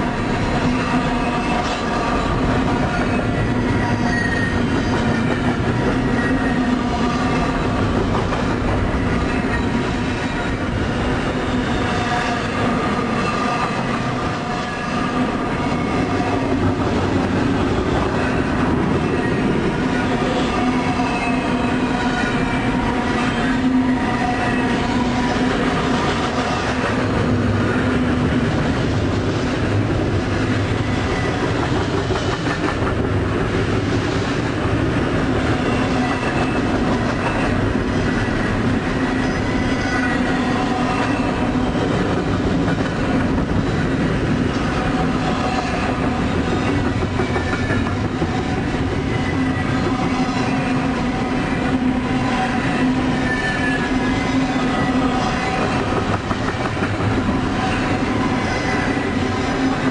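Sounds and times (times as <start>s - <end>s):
train rumbling on track: 0.0s - 59.9s
wheels clacking over rail joints: 55.4s - 57.6s.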